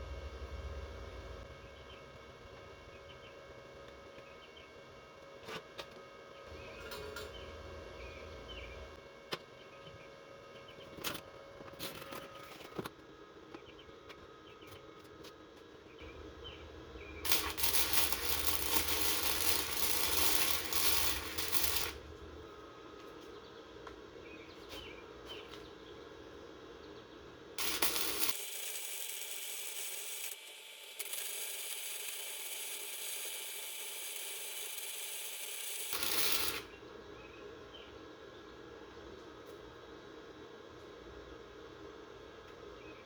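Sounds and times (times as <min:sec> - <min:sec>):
low hum: 0:00.0 - 0:03.1, 0:16.0 - 0:22.8
welding arc burning: 0:16.0 - 0:22.5, 0:27.6 - 0:36.8.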